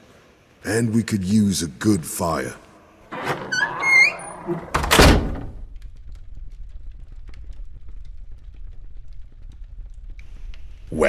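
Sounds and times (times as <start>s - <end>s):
small crackles and ticks: 5.6s - 11.0s.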